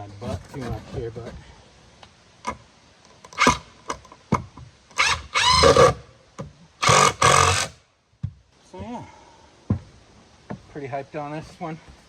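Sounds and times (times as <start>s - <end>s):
power drill running: 6.8s - 7.8s.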